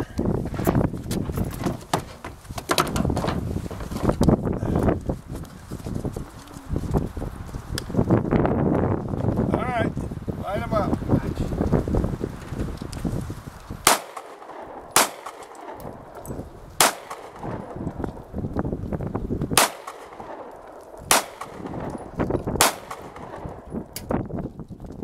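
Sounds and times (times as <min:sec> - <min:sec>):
gunshots: 0:13.8 - 0:16.2, 0:16.8 - 0:18.0, 0:19.6 - 0:23.9.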